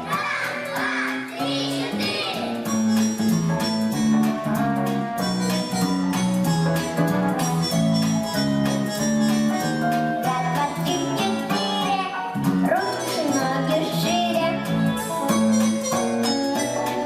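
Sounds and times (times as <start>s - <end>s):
dance backing track: 0.0s - 17.0s
person singing: 10.2s - 14.7s.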